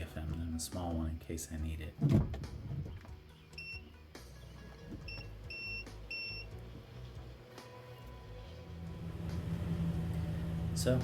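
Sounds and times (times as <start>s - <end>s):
high electronic beeps: 3.6s - 3.8s, 5.1s - 6.5s.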